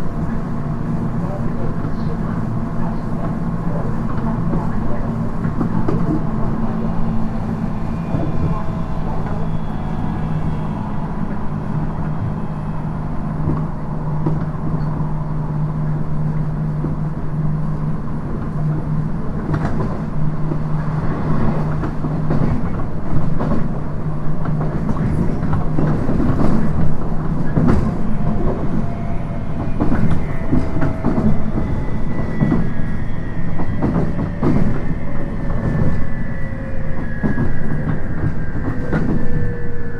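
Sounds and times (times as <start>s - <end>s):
rail-joint clickety-clack: 0.1s - 39.9s.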